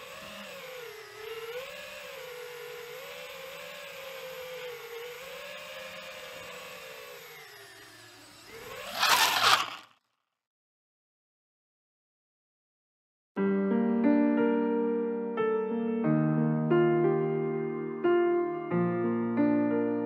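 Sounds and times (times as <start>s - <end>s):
drone propellers whining: 7.4s - 9.9s.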